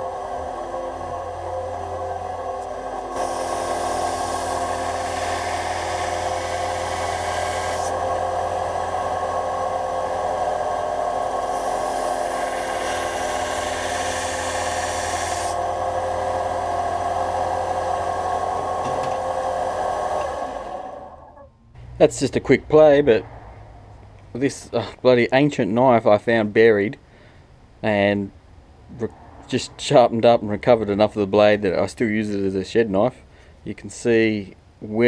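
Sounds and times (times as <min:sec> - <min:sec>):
belt sander motor humming: 0:00.0 - 0:21.4.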